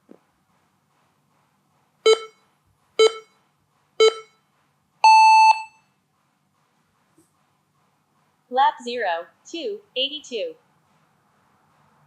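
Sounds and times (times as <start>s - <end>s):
short countdown beeps: 2.1s - 2.4s, 3.0s - 3.3s, 4.0s - 4.4s, 5.0s - 5.8s
long high-pitched beep: 5.0s - 5.8s.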